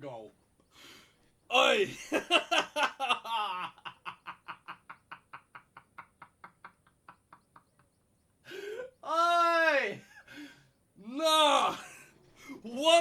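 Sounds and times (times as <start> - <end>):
man laughing: 1.5 - 9.0, 9.8 - 10.6, 11.2 - 13.0.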